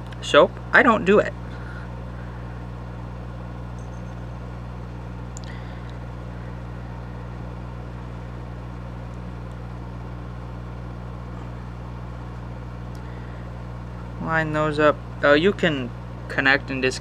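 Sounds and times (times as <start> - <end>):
low background hum: 0.0 - 17.0
faint small clicks: 5.3 - 6.0.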